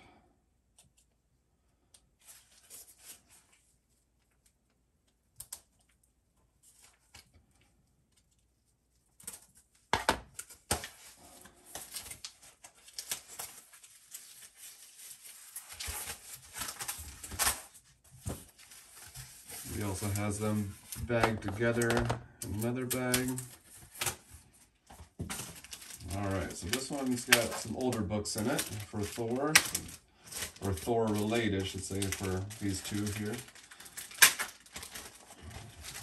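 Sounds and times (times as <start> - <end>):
package wrapping rustling: 6.6 - 36.0.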